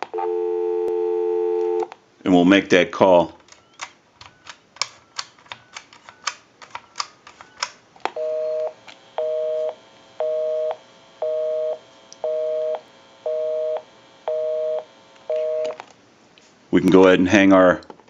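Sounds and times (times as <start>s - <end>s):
telephone busy signal: 0.1s - 1.9s, 8.2s - 15.8s.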